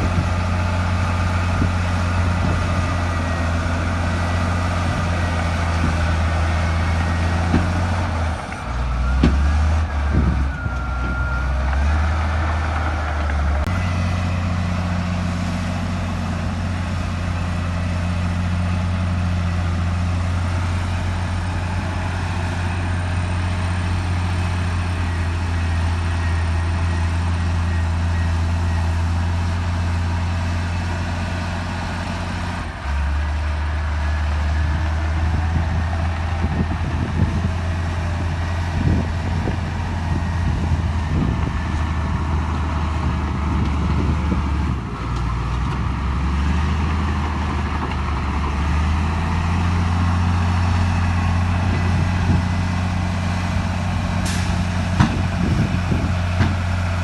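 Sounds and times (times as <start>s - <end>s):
bulldozer diesel engine: 0.0s - 57.0s.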